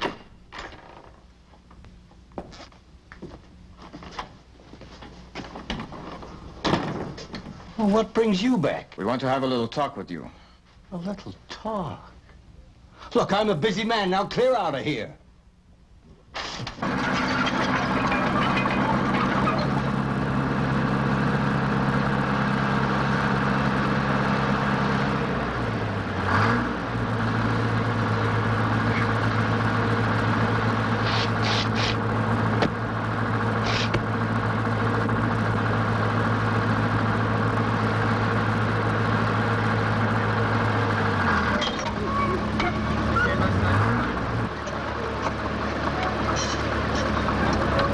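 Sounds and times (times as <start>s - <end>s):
bulldozer engine running: 16.8s - 47.9s.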